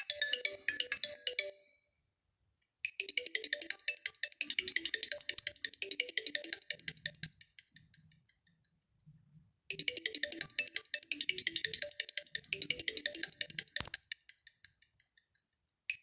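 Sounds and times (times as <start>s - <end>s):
electronic phone ringtone: 0.0s - 1.9s, 3.0s - 7.2s, 9.7s - 13.9s.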